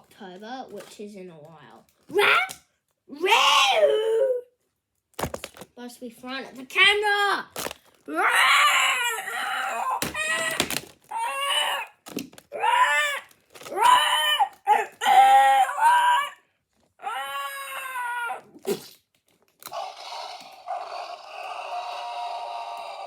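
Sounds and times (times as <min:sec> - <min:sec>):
child roaring and screeching: 0:02.1 - 0:04.5, 0:08.1 - 0:16.4, 0:17.0 - 0:18.6, 0:19.7 - 0:23.0.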